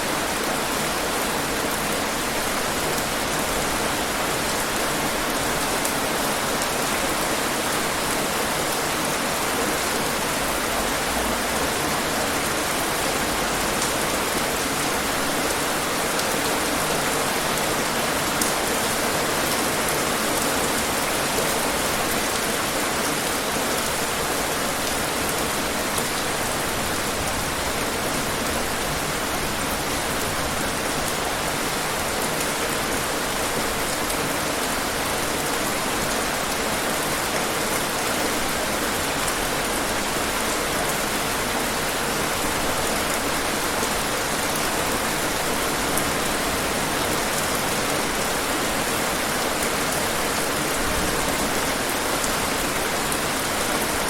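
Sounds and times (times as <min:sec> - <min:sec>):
heavy rain on hard surfaces: 0:00.0 - 0:54.0.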